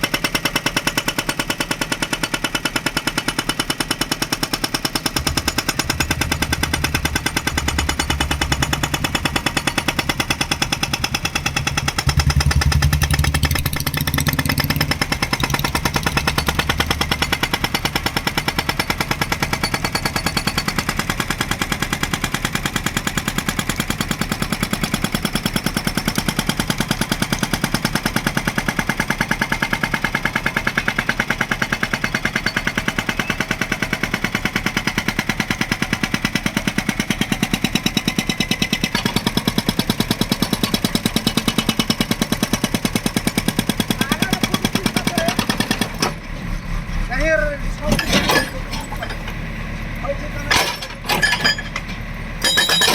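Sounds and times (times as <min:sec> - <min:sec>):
hydraulic breaker hammering: 0:00.2 - 0:46.3, 0:47.8 - 0:52.9
diesel engine running: 0:03.4 - 0:19.6, 0:36.6 - 0:52.9.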